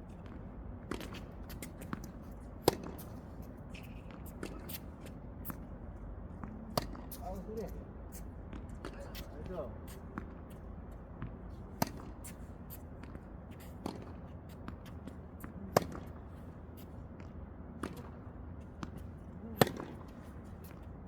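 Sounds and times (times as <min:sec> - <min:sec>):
racket hitting tennis ball: 0:19.6 - 0:20.1.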